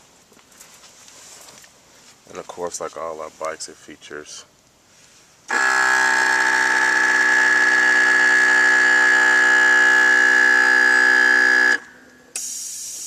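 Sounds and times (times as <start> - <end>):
air compressor buzzing: 5.5 - 13.0
air hissing: 10.1 - 13.0.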